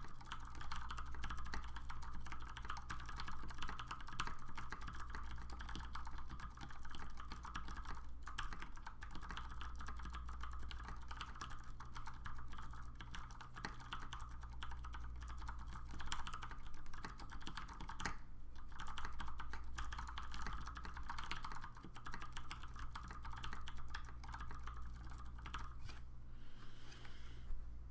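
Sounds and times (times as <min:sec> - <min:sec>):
fast typing on mechanical keyboard: 0:00.0 - 0:25.8
steady low hum: 0:18.2 - 0:27.9.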